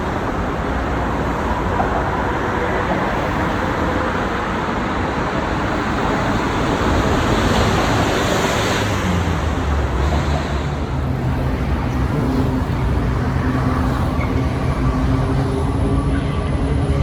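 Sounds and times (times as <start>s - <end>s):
city traffic noise: 0.0s - 17.0s
low vehicle engine hum: 8.8s - 17.0s.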